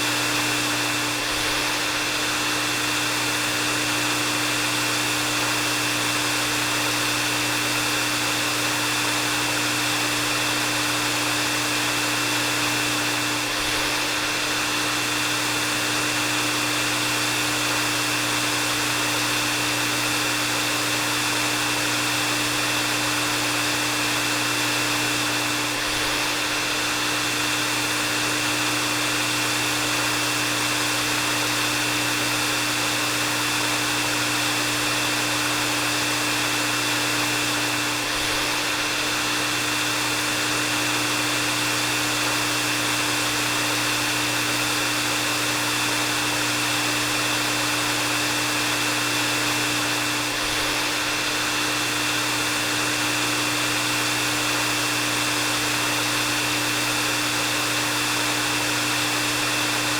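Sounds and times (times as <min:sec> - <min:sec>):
hair dryer running: 0:00.0 - 0:59.9.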